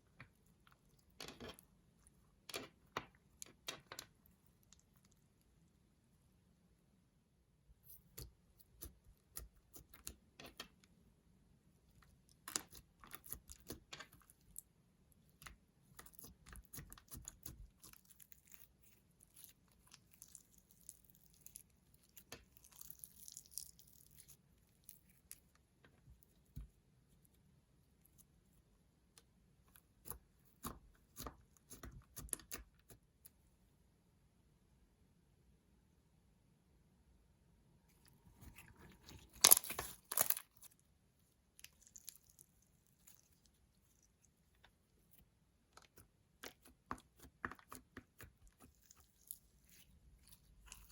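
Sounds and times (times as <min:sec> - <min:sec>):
slime squishing: 0:11.8 - 0:27.1, 0:38.0 - 0:50.9.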